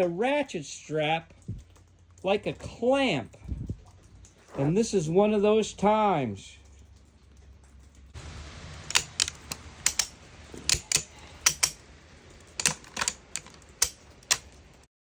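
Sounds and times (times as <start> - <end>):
ratchet strap clicking: 8.9 - 11.8, 12.6 - 14.5.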